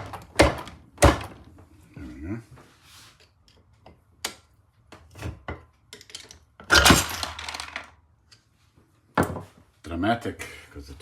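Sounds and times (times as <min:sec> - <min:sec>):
metal parts knocking and clinking: 0:05.9 - 0:08.0.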